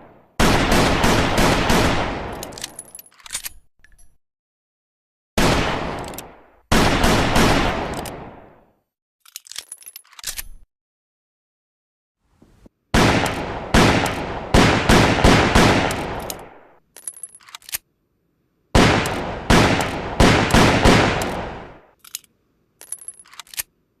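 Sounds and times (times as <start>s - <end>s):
high metallic clicks and clinks: 2.4s - 4.2s, 9.2s - 10.7s, 17.0s - 17.8s, 22.0s - 23.7s.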